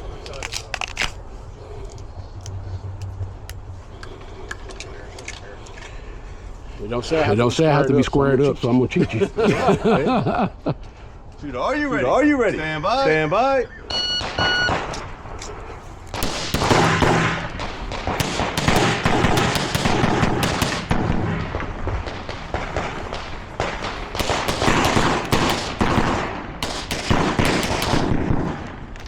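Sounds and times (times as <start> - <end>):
pistol shots fired rapidly: 16.2 - 28.8.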